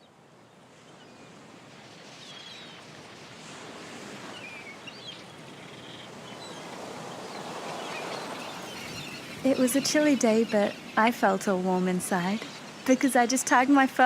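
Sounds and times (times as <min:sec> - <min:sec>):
high bird calls: 0:04.4 - 0:13.4.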